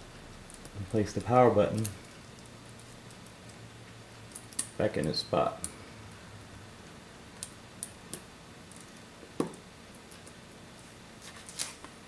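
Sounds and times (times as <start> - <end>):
light clicks of small parts: 0.4 - 3.6.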